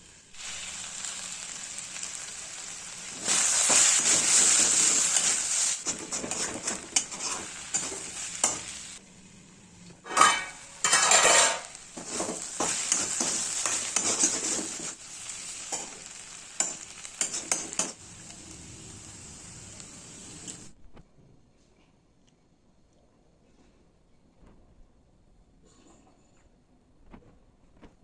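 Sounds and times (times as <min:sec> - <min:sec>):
food sizzling in hot oil: 0:00.0 - 0:20.7
spatula scraping and tapping pan: 0:03.6 - 0:08.8, 0:10.0 - 0:15.0, 0:16.6 - 0:18.0.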